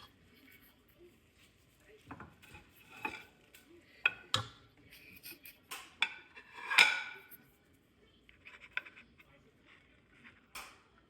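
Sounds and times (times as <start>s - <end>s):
dishes and utensils clinking: 2.1s - 7.6s.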